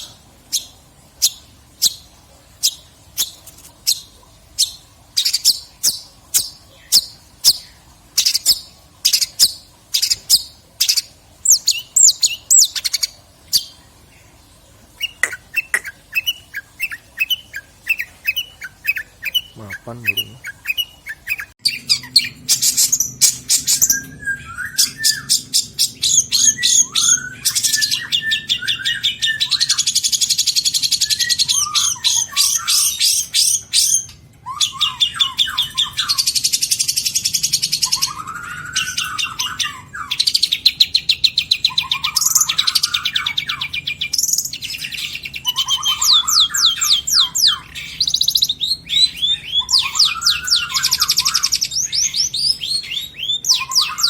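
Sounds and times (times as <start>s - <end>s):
shrike singing trills: 15.0s - 54.0s.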